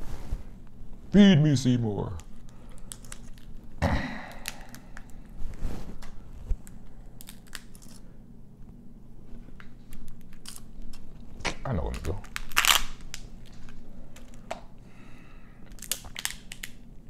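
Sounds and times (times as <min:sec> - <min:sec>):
crab shell cracking: 0:02.4 - 0:03.6, 0:04.2 - 0:05.3, 0:06.6 - 0:08.0, 0:09.9 - 0:11.0, 0:11.8 - 0:14.6, 0:15.6 - 0:16.9.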